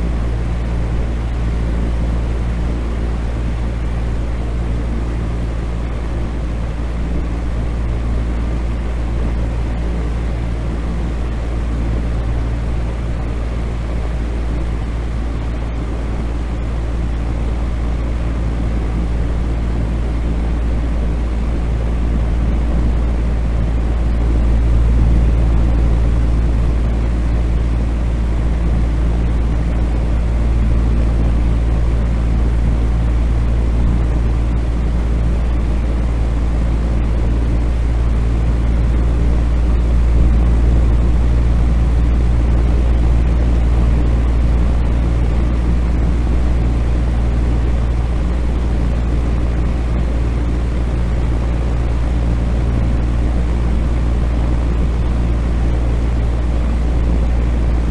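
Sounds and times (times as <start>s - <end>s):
electric fan motor hum: 0.0s - 57.9s
fan air rushing: 0.0s - 57.9s.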